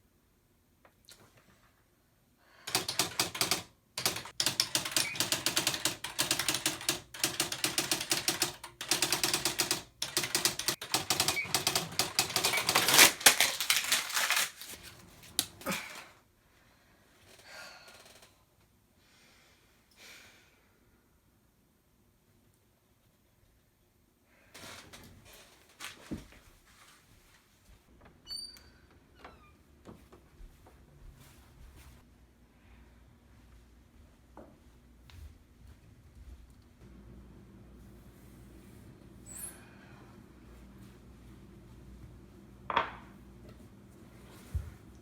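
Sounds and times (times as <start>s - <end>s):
typewriter typing: 2.7s - 15.6s.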